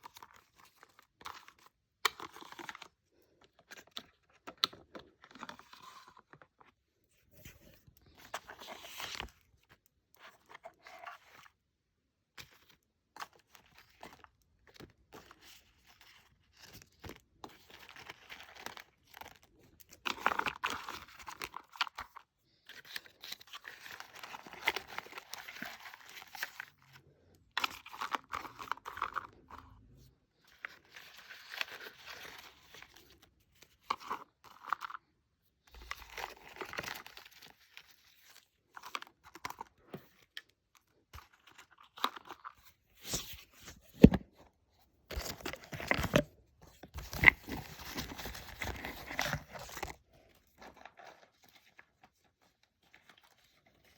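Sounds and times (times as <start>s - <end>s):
packaging crinkling and tearing: 13.6s - 27.0s, 45.1s - 52.2s.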